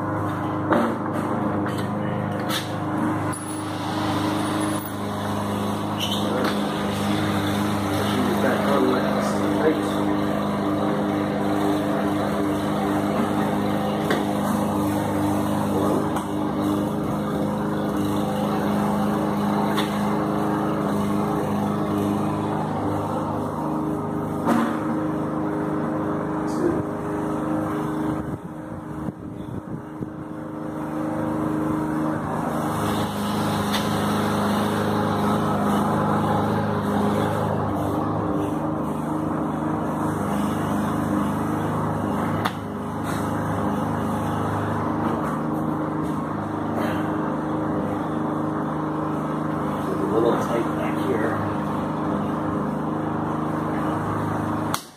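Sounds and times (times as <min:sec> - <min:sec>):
low engine drone: 0:00.0 - 0:54.9.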